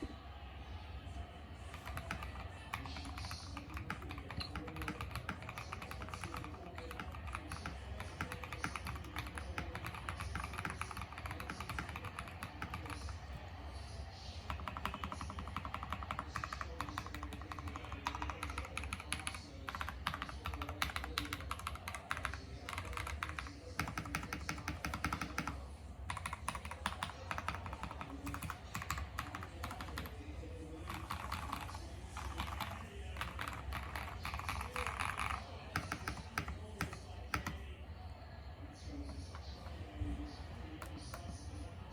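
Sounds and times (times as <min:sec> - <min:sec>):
fast mechanical keyboard typing: 0:01.6 - 0:13.6, 0:14.2 - 0:37.7.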